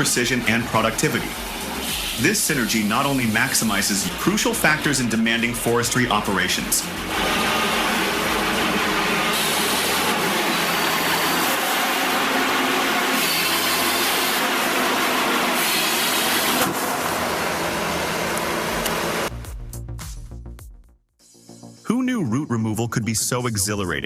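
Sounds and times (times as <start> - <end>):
heavy forestry machinery: 0.0 - 19.3.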